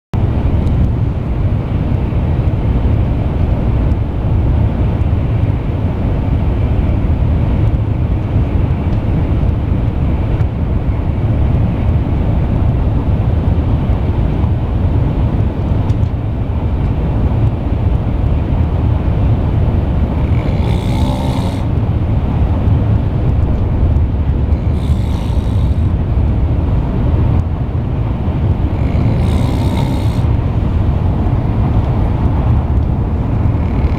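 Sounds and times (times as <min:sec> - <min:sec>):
steady low rumble: 0:00.2 - 0:33.9
man snoring: 0:20.0 - 0:21.8, 0:24.5 - 0:26.0, 0:28.6 - 0:30.5, 0:33.4 - 0:33.9.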